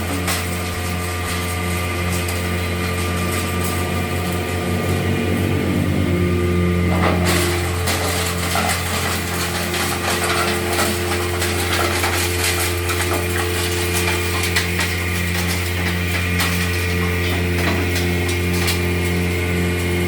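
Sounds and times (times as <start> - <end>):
stone grinder humming: 0.0 - 20.0.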